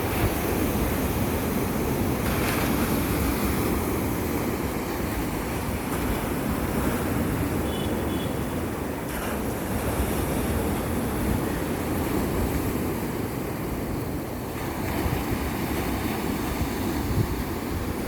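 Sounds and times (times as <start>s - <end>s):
sea waves and surf: 0.0s - 18.0s.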